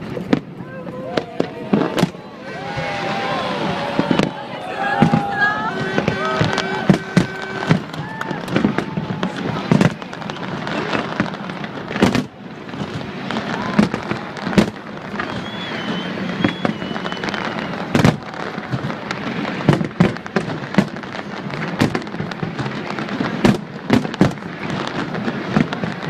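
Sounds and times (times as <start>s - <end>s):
fireworks bangs: 0.0s - 26.0s
firework whistle: 0.3s - 19.8s.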